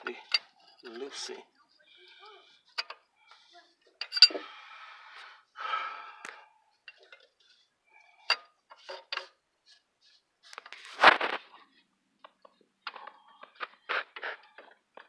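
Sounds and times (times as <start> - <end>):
man breathing hard: 4.4 - 6.6.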